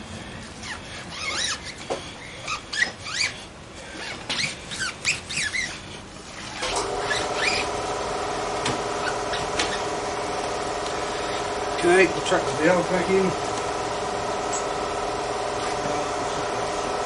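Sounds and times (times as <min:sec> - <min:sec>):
tyre squeaking against rim: 0:00.6 - 0:07.7
motor humming: 0:02.7 - 0:17.0.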